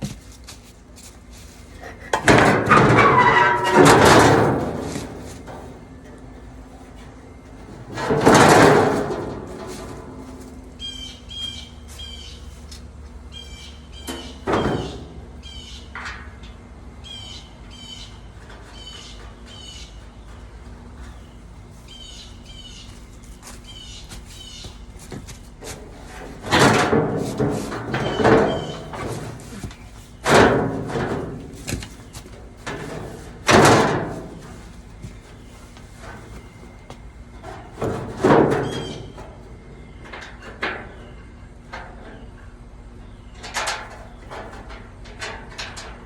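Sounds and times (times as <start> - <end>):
small birds chirping: 10.8 - 12.7, 13.3 - 16.0, 17.0 - 25.1.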